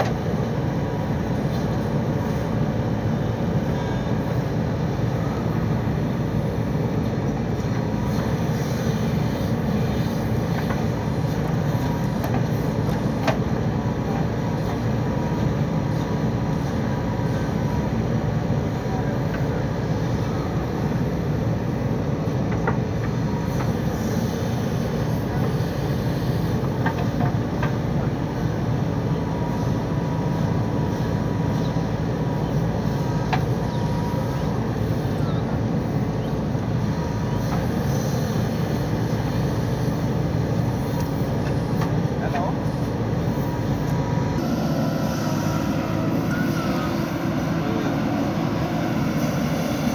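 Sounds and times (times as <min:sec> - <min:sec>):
diesel engine running: 0:00.0 - 0:49.9.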